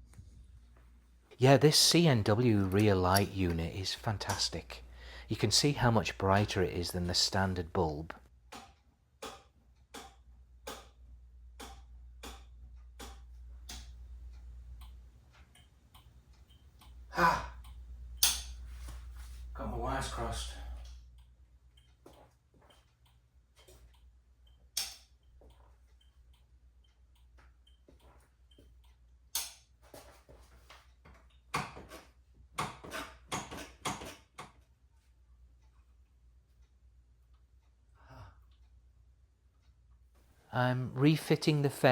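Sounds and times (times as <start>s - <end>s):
turn-signal flasher ticking: 11.5s - 18.7s
faint low hum: 16.7s - 21.8s.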